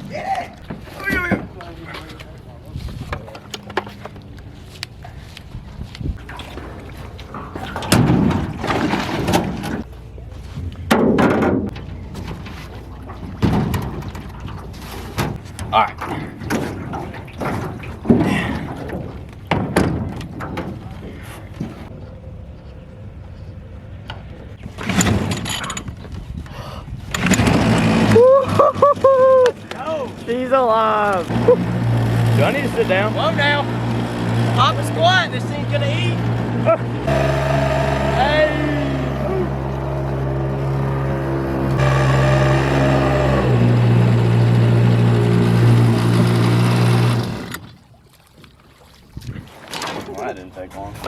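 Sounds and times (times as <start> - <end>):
recoil starter cord cranking: 27.1 - 28.2, 36.2 - 47.7
outboard engine starting: 27.1 - 29.1, 31.3 - 47.8.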